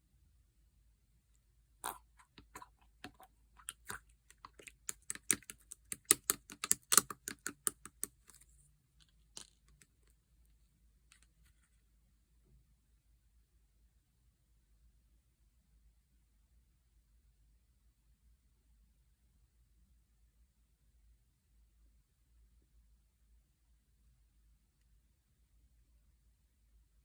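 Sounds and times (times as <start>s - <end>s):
slime clicking and popping: 1.9s - 8.2s.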